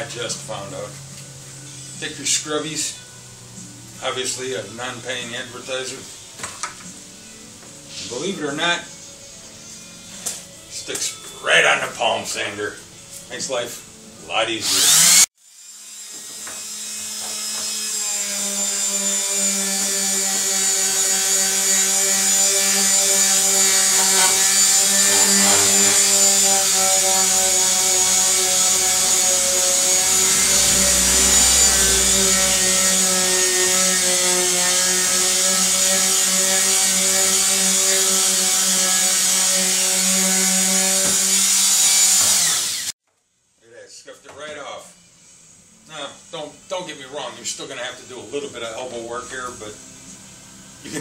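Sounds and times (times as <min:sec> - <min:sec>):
electric palm sander motor hum: 0:14.6 - 0:42.9.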